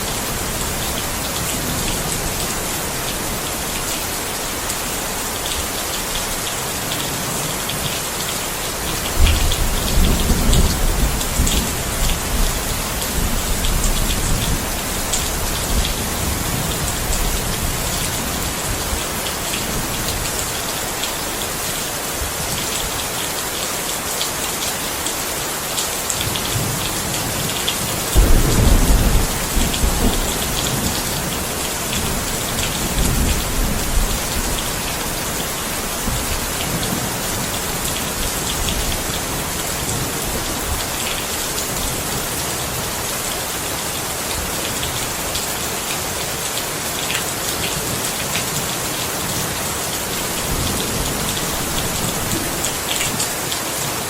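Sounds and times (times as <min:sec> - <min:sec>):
steady rain falling: 0:00.0 - 0:54.0
thunder rumbling: 0:28.1 - 0:35.4.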